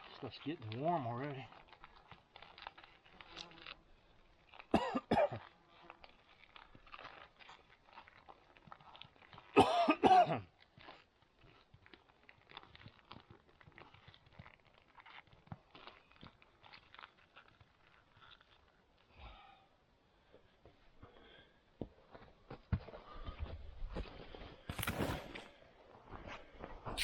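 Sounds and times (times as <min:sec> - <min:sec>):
man coughing: 0:04.7 - 0:05.4, 0:09.6 - 0:10.5.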